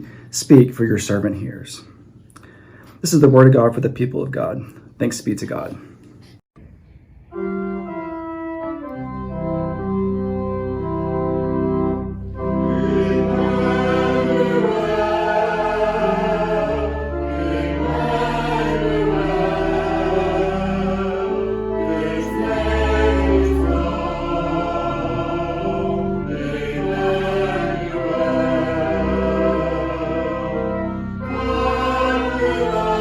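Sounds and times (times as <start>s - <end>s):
organ: 7.3s - 33.0s
choir singing a hymn: 8.9s - 33.0s.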